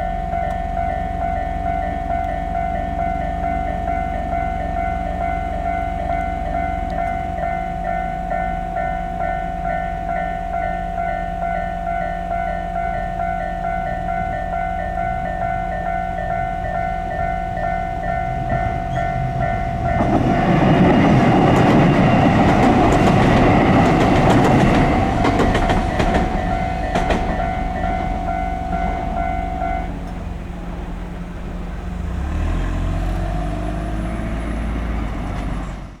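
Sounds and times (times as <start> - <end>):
level crossing electronic bell: 0.0 - 20.2, 24.9 - 30.0
railcar rumble: 0.0 - 36.0
wheel clicks over rail joints: 17.9 - 29.1.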